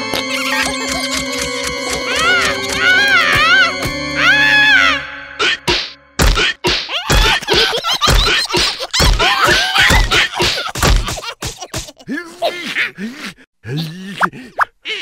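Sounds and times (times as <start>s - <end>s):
squeaky cartoon voice sounds: 0.1s - 1.4s
heavy cartoon thud: 5.7s - 9.2s, 9.9s - 11.2s.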